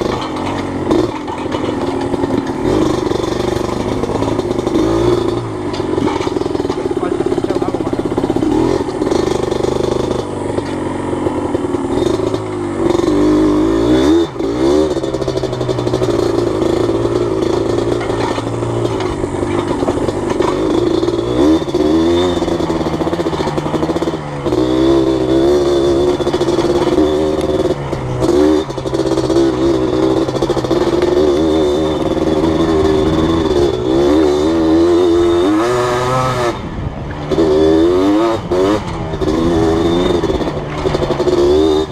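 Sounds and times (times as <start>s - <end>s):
two-stroke engine revving: 0.0s - 41.9s.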